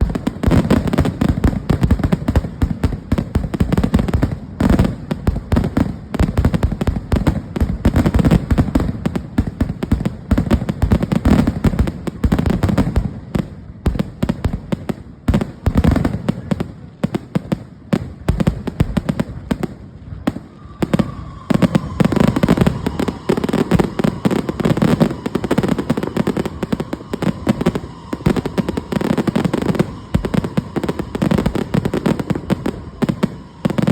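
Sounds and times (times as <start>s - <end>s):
fireworks bangs and crackles: 0.0s - 33.9s
faint thin tone: 20.4s - 33.8s.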